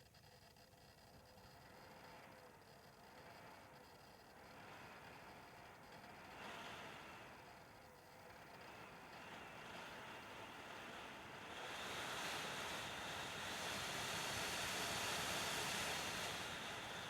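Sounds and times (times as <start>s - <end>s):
fan running: 4.4s - 17.0s.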